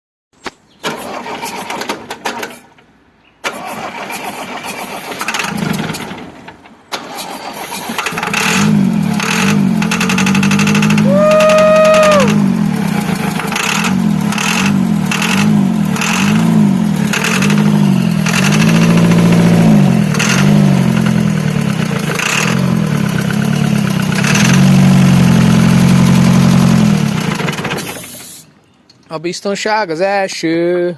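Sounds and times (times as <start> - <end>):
engine cranking and running: 0.8 - 2.8, 3.4 - 28.4.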